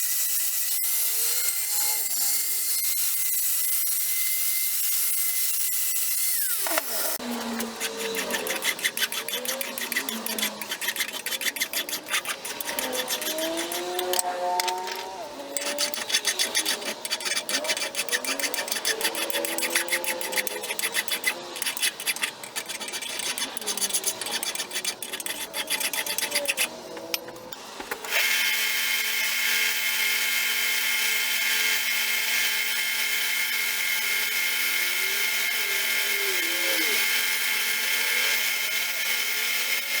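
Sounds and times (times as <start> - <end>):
abrasive rasping on metal: 6.7 - 27.6
power sander motor whine: 12.5 - 17.0.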